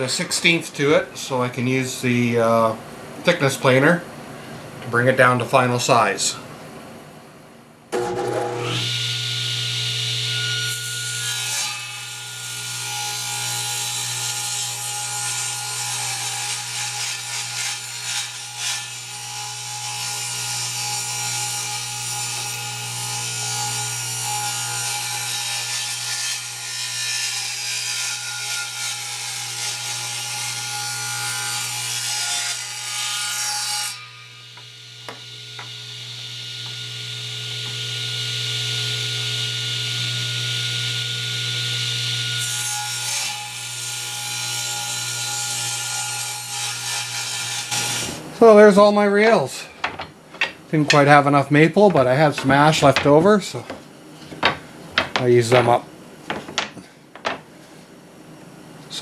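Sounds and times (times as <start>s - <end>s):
table saw motor hum: 7.9s - 14.3s, 34.4s - 42.5s
saw cutting wood: 8.0s - 48.9s.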